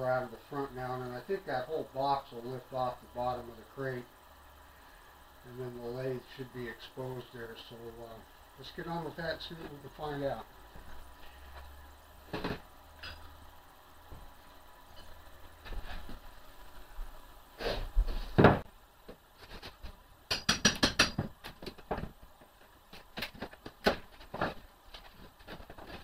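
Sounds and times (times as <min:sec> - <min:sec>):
heavy thumps on wooden crate: 0:18.4 - 0:18.6
sharp metallic taps: 0:20.3 - 0:21.2
tools knocking on wood: 0:20.3 - 0:22.1.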